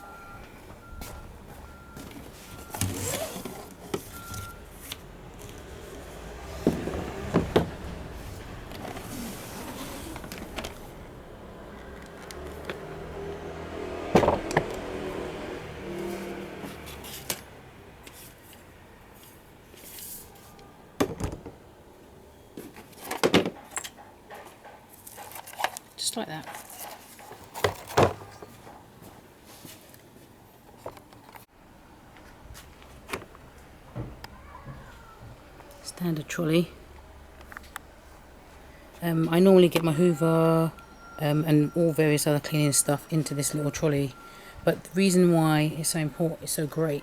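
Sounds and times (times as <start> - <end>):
plastic parts clattering: 25.1 - 28.6.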